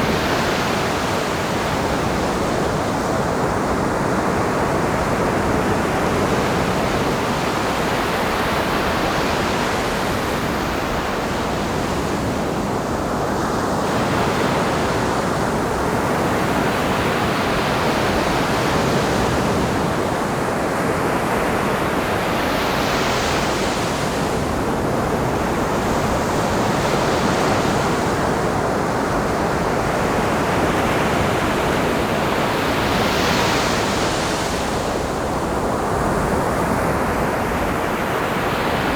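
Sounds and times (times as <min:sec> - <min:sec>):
waves breaking on beach: 0:00.0 - 0:38.9.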